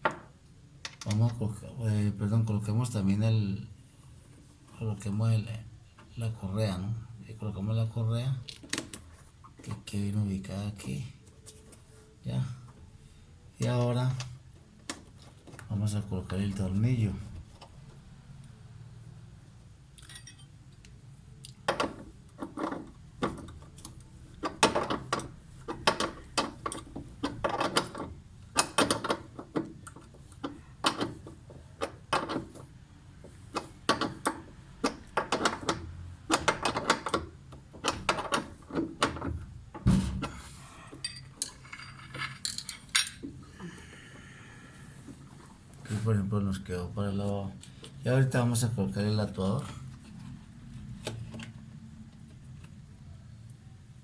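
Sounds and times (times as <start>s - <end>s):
hand tool clinking on metal screw: 20.0s - 20.5s.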